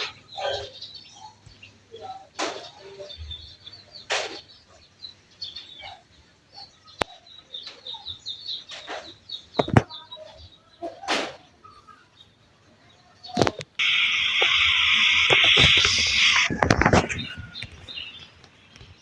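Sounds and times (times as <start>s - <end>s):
small birds chirping: 0.0s - 19.0s
sharp click: 13.4s - 17.8s
bursts of noise: 13.8s - 18.1s.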